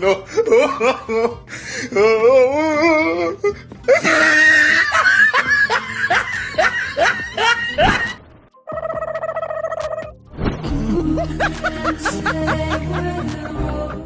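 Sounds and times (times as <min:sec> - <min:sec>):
wavering sing-song laugh: 0:00.0 - 0:01.5, 0:03.9 - 0:08.2, 0:10.7 - 0:14.0.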